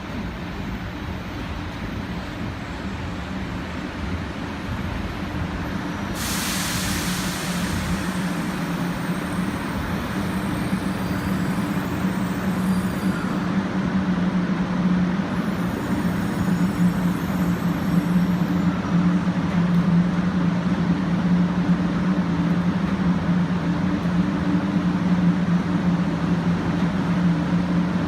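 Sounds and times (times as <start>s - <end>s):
train humming: 0.0s - 28.0s
hiss of released air: 6.0s - 10.2s.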